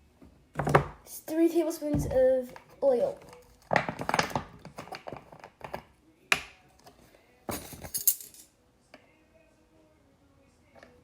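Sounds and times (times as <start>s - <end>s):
metal measuring spoons clinking: 7.5s - 8.5s.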